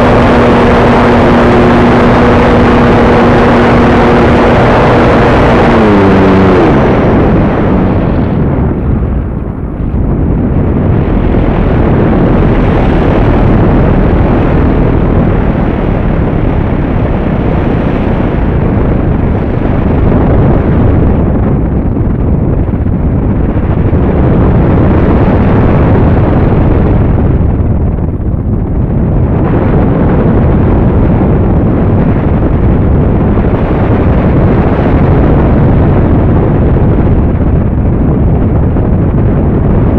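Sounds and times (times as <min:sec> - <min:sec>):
electric motor tone falling: 0:00.0 - 0:08.4
wind buffeting microphone: 0:00.0 - 0:39.9.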